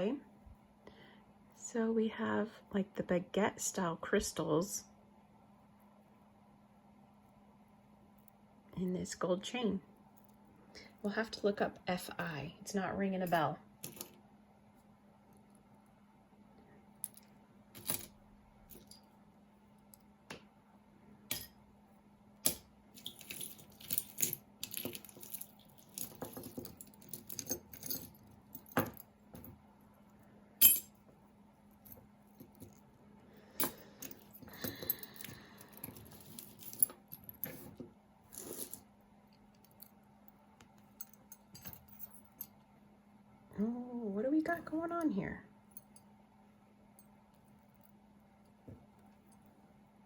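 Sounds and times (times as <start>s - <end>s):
metal jewelry jangling and clinking: 13.2s - 14.2s, 17.0s - 19.2s, 22.4s - 29.6s, 30.6s - 33.0s, 33.6s - 40.1s, 40.8s - 42.6s.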